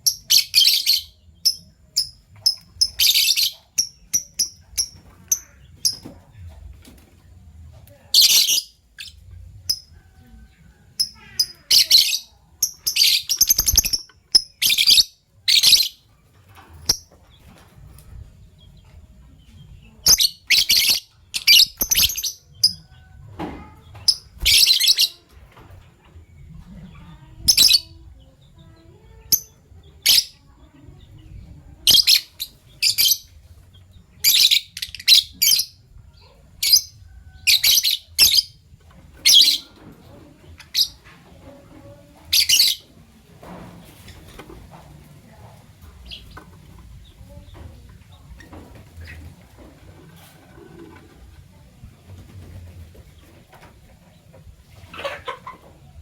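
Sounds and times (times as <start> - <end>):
lovebirds chirping: 0.0 - 6.2, 7.8 - 23.1, 40.6 - 43.0.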